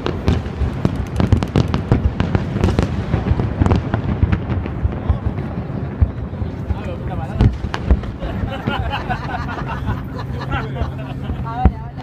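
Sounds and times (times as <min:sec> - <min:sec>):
fireworks bangs: 0:00.0 - 0:09.2
distant explosions rumbling: 0:00.0 - 0:12.0.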